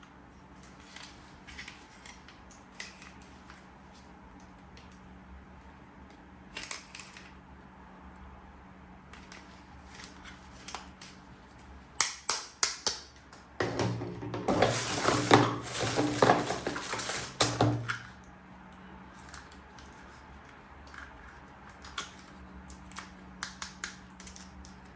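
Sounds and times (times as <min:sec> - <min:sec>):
packaging crinkling and rustling: 0:14.4 - 0:18.2.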